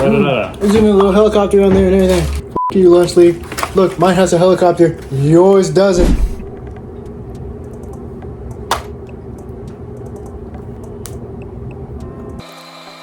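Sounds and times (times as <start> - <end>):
low hum: 6.0 - 12.4.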